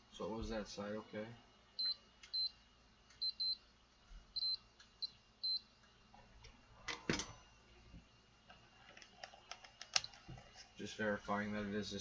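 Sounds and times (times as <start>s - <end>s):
multimeter continuity beeps: 1.8s - 2.6s, 3.2s - 3.6s, 4.4s - 5.7s.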